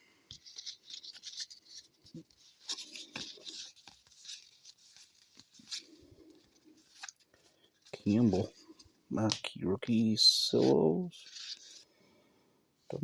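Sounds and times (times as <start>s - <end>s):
cards rubbing and sliding: 0.3s - 7.2s.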